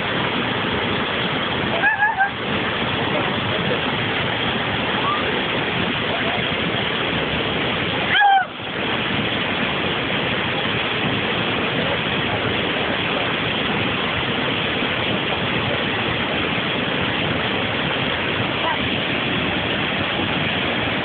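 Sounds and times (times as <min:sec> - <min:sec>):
waterfall rushing: 0:00.0 - 0:21.0.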